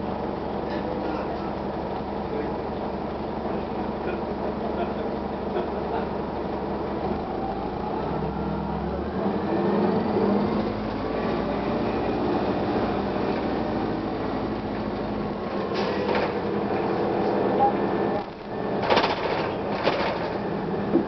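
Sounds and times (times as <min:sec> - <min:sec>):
bus diesel engine running: 0:00.0 - 0:21.0
drivetrain whine: 0:00.0 - 0:21.0.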